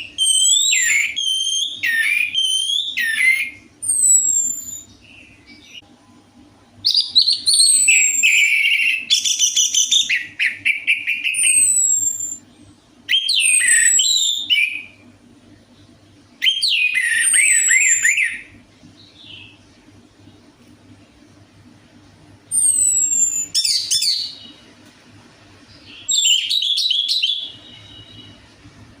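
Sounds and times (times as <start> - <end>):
thrush song whistles and trills: 16.4 - 18.5.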